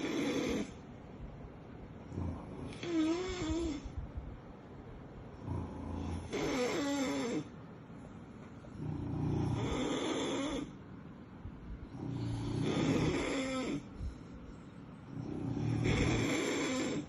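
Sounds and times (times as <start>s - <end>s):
puppy snoring: 0.0s - 0.9s, 2.0s - 4.0s, 5.3s - 7.5s, 8.6s - 10.8s, 11.8s - 14.2s, 14.9s - 17.0s.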